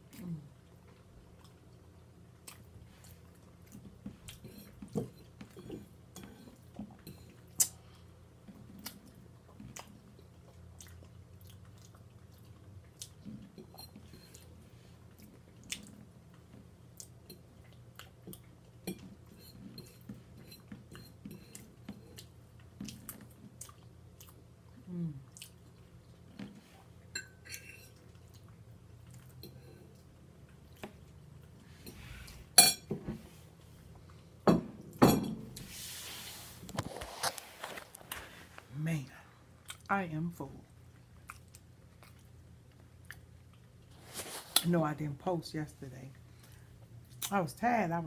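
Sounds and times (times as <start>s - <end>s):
woman chewing food: 0.0s - 32.6s, 40.6s - 44.0s.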